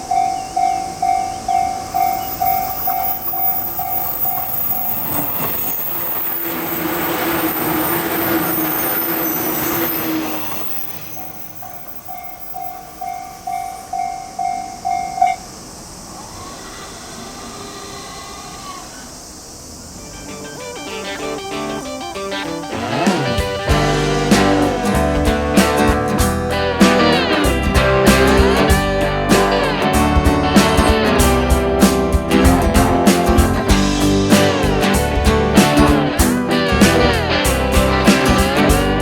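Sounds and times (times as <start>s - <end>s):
level crossing alarm bell: 0.0s - 5.9s, 8.9s - 15.5s
train wheels rushing: 0.0s - 15.5s.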